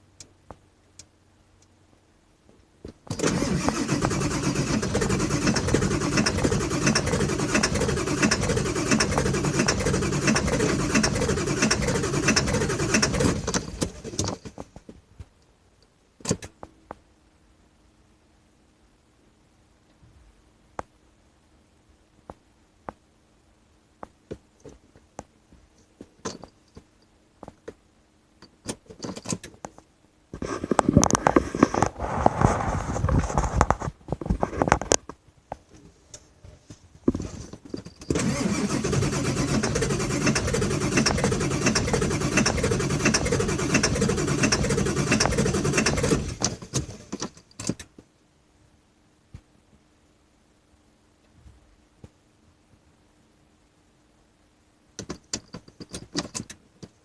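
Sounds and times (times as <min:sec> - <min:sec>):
diesel engine cranking on starter: 0:03.1 - 0:14.4, 0:38.0 - 0:47.4.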